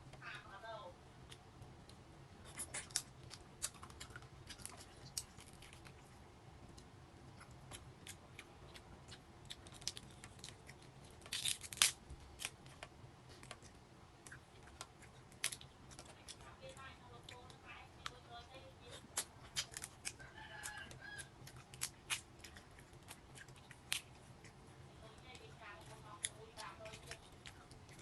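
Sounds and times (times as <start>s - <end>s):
crab shell cracking: 1.3s - 6.0s, 7.4s - 16.4s, 19.0s - 24.6s.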